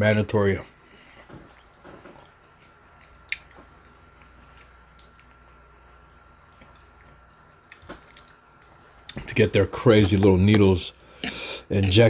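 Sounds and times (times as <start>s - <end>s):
wet chewing sounds: 0.9s - 9.3s
sharp mouth clicks: 4.9s - 5.4s.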